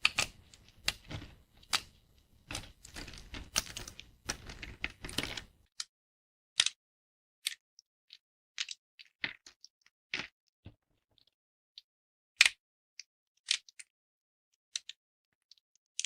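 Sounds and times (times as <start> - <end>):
soap plates cracking: 0.0 - 5.9, 6.6 - 6.8, 7.4 - 10.4, 13.4 - 13.9.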